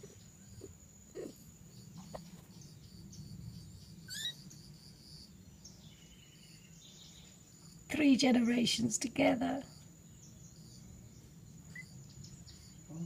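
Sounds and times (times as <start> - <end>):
faint animal calls: 0.0 - 2.4, 4.1 - 4.4.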